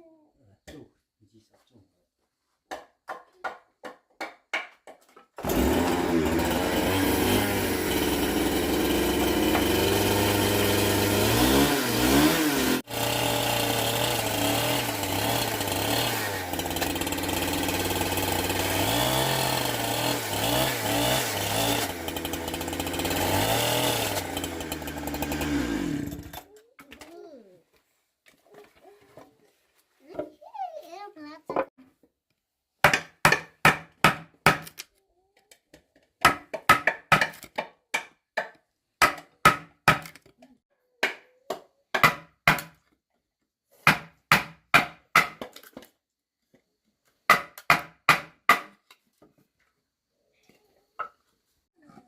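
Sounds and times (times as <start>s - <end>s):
chainsaw cutting wood: 5.4s - 26.5s.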